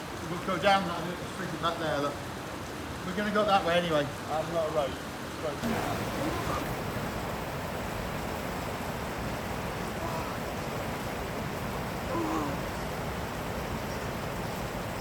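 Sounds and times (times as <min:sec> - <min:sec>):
waterfall rushing: 0:05.4 - 0:15.0.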